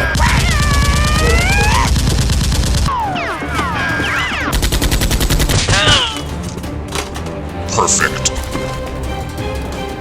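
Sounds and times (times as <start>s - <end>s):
automatic gunfire: 0.1s - 6.0s.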